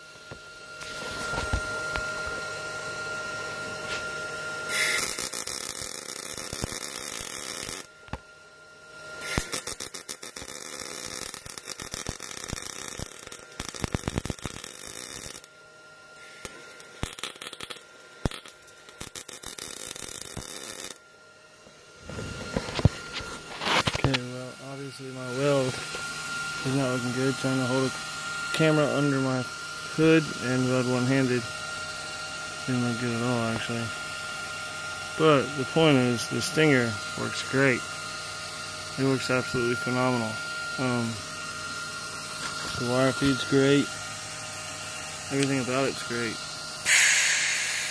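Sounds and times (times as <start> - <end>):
welding arc crackling: 4.7 - 8.2, 9.2 - 15.5, 16.2 - 21.0, 44.8 - 47.9.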